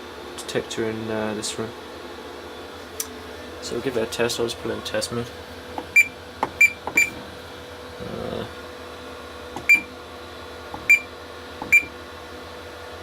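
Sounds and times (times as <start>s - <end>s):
keypad beeps: 5.9s - 7.2s, 9.6s - 9.9s, 10.8s - 11.9s.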